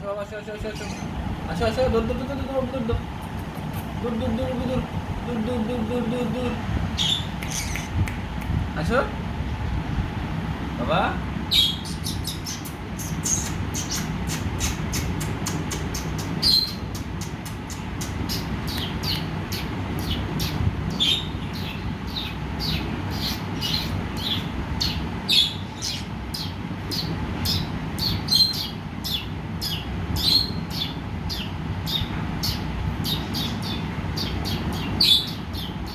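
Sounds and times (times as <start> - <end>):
budgerigar chirping: 7.0 - 8.0, 11.5 - 35.9.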